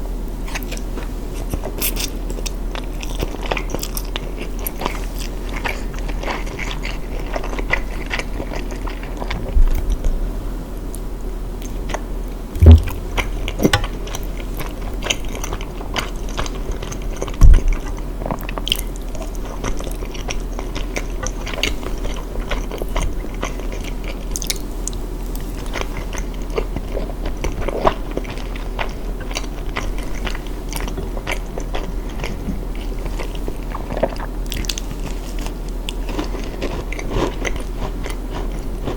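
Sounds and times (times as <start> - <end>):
chewing crunchy cookies: 0.4 - 10.1, 11.6 - 38.9
steady low hum: 9.2 - 15.6
loud low thumps: 9.5 - 10.4, 12.6 - 14.1.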